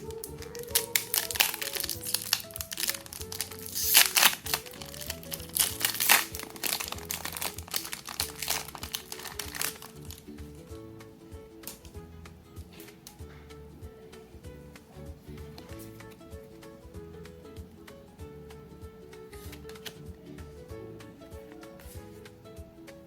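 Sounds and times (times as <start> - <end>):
foil wrapper crinkling: 0.0 - 10.2
background music: 0.0 - 23.0.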